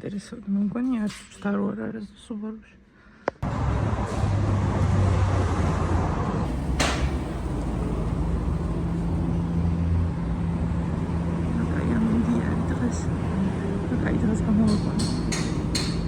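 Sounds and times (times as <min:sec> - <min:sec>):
car engine running: 0:05.6 - 0:16.0.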